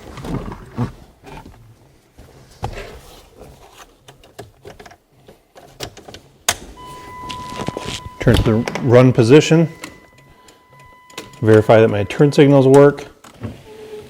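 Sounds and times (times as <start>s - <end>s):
electronic warning tone: 6.8s - 12.9s
car keys rattling: 7.2s - 12.2s.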